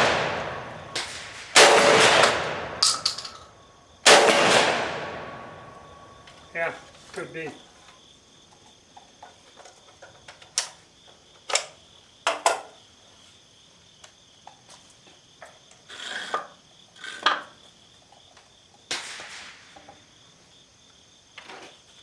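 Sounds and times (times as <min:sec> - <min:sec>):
crickets chirping: 0:00.0 - 0:22.0
shotgun shells clicking: 0:02.8 - 0:03.6.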